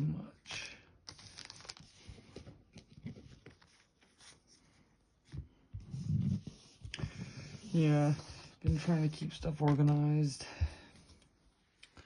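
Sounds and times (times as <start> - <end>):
cards and packaging handled: 0.4 - 5.4.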